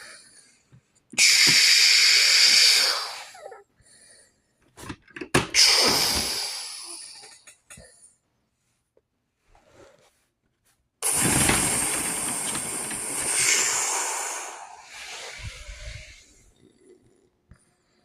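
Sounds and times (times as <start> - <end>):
vocal hissing rush: 1.2 - 3.4, 5.6 - 7.3, 11.0 - 16.5.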